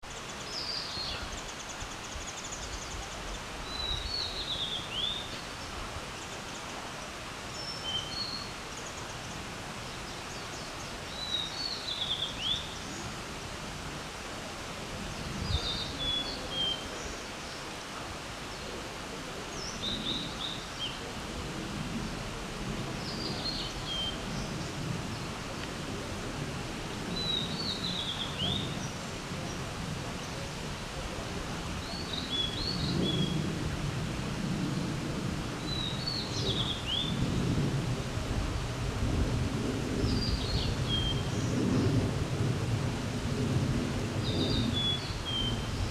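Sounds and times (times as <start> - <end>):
steady background hiss: 0.0 - 45.9.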